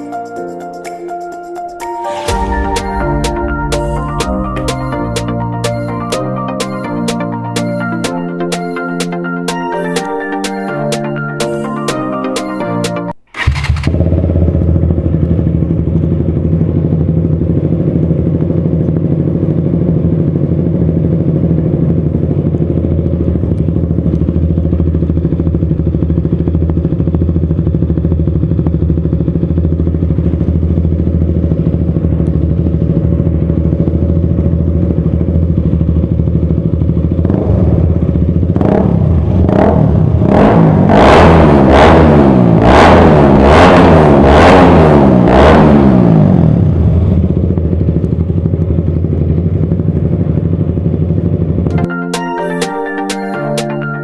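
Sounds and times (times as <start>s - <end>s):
motorcycle engine idling and revving: 13.2s - 51.7s.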